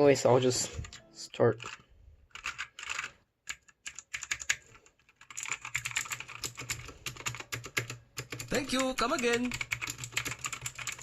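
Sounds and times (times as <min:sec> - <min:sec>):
clicky mechanical keyboard typing: 0:00.8 - 0:11.0.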